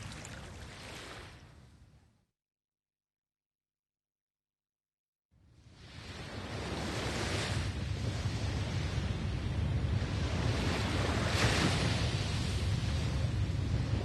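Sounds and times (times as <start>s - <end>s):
ocean waves breaking on shore: 0.0s - 1.7s, 5.5s - 14.0s.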